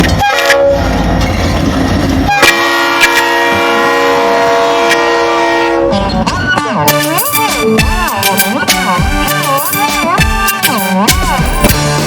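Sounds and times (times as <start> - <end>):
train horn chord: 0.1 - 1.0, 2.3 - 6.1.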